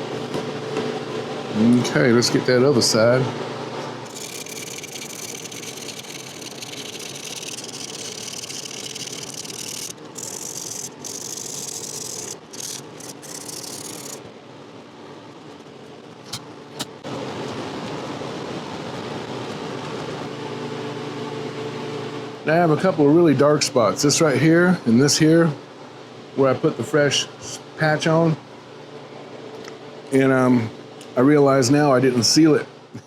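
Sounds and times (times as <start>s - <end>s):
fan humming: 0.0s - 21.0s.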